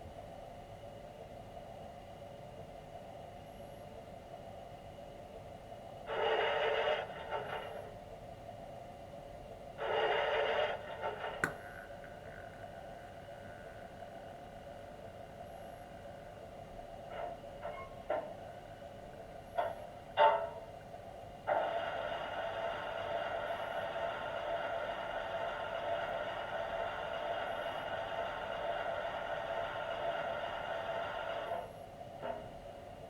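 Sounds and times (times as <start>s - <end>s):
steady steam sound: 6.1s - 7.8s, 9.8s - 12.0s, 21.5s - 31.8s.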